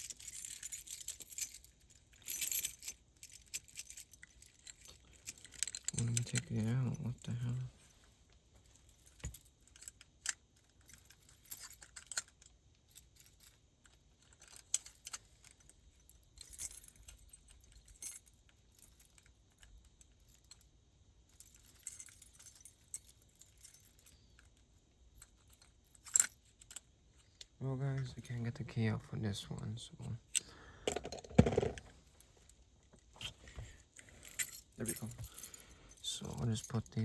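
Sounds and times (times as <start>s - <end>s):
key rattling in door lock: 0.0s - 7.6s, 34.2s - 37.0s.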